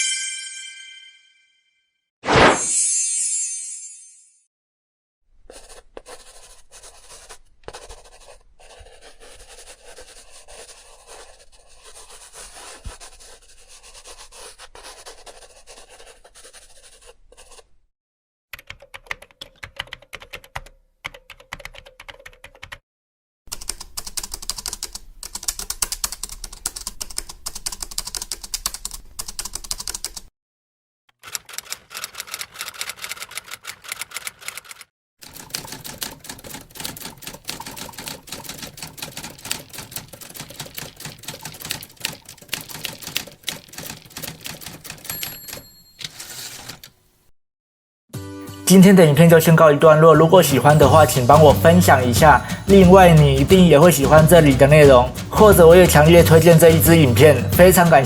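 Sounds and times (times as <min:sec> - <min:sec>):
pen scratching while handwriting: 0:05.4 - 0:17.7, 0:31.2 - 0:46.9
typewriter keys clacking: 0:23.5 - 0:30.3, 0:31.2 - 0:47.0, 0:50.8 - 0:58.0.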